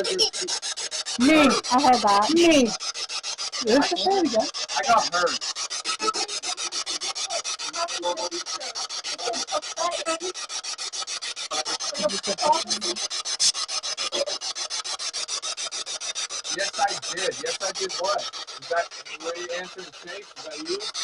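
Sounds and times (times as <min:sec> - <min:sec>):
broadcast voices: 0:00.0 - 0:00.5, 0:01.2 - 0:02.8, 0:03.6 - 0:10.4, 0:11.5 - 0:13.1, 0:14.1 - 0:14.4, 0:16.5 - 0:20.9.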